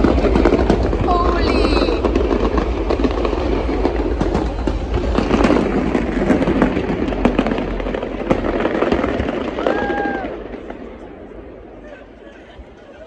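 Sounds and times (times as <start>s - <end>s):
steady low rumble: 0.0s - 9.6s
fireworks crackling: 0.0s - 13.0s.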